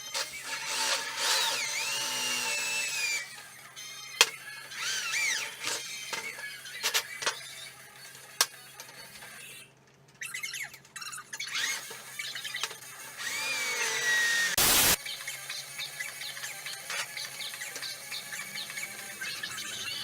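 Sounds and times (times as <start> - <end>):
power drill squealing on metal: 0.0 - 7.7, 10.3 - 15.0.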